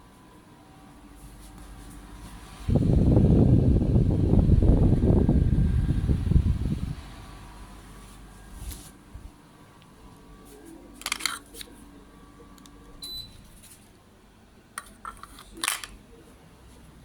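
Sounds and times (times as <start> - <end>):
faint steady hum: 0.0 - 17.0
sharp clicks and rustles: 11.0 - 11.8, 14.8 - 16.0.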